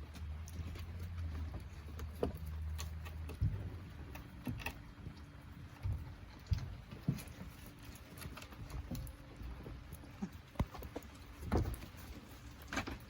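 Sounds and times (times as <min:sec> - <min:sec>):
puppies playing: 0:00.0 - 0:13.0
light knocks and thumps: 0:10.5 - 0:13.0.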